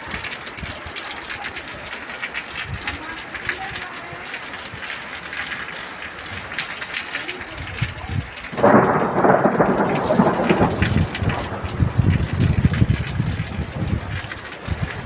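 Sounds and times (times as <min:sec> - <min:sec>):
steady rain falling: 0:00.0 - 0:15.0
loud rumble of thunder: 0:08.0 - 0:15.0.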